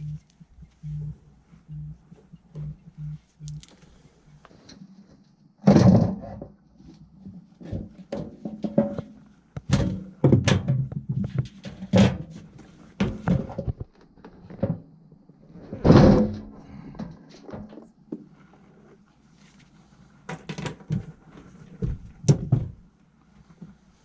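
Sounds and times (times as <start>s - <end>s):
knocks and clunks of handling tools: 7.6s - 14.8s, 20.3s - 22.8s.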